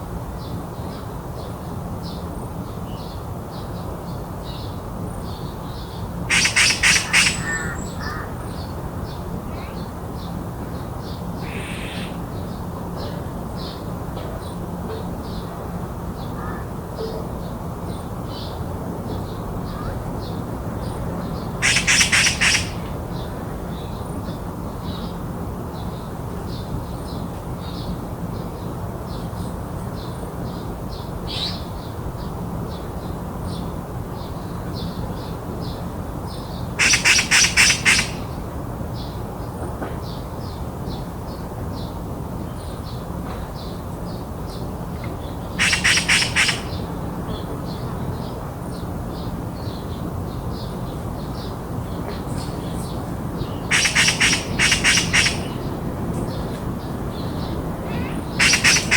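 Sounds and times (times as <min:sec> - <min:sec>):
magpie chattering: 0:06.3 - 0:08.3, 0:11.4 - 0:12.2, 0:21.6 - 0:22.9, 0:36.8 - 0:38.3, 0:45.5 - 0:46.9, 0:52.8 - 0:56.4, 0:57.8 - 0:58.9.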